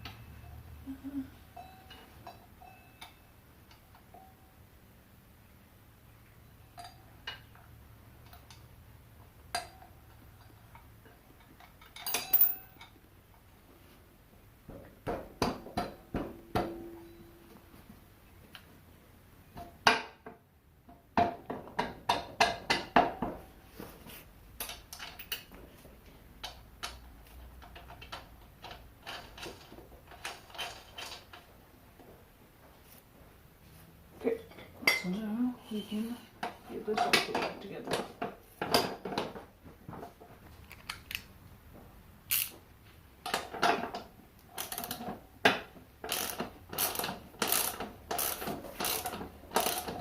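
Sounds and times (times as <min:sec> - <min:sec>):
metal tools clinking on metal: 0:11.4 - 0:13.0.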